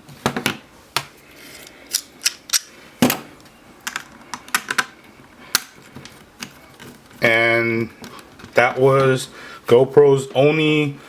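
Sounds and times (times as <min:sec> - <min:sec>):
hard plastic parts clicking: 0:03.8 - 0:07.1.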